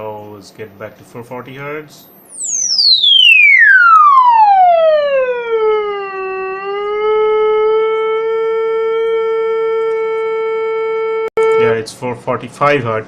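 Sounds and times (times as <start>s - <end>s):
sine tone sweeping down: 2.2s - 11.8s.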